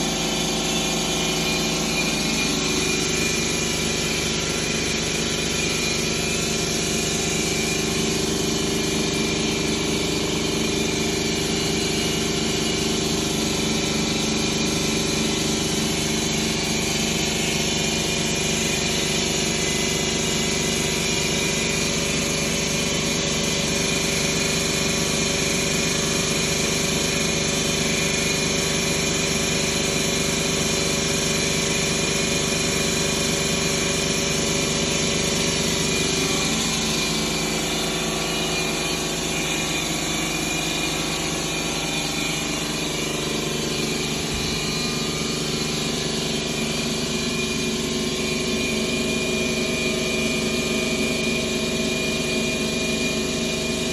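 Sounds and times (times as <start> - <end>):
misfiring car engine idling: 0.0 - 51.7.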